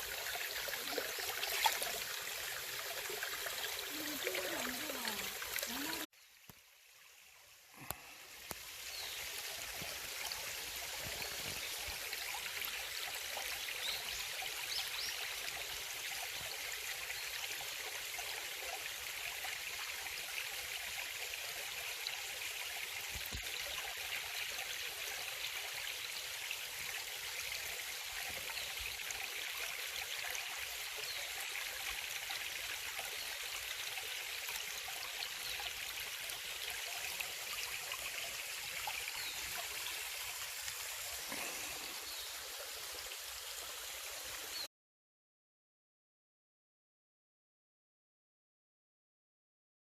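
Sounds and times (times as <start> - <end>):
stream rushing water: 0.0 - 6.1.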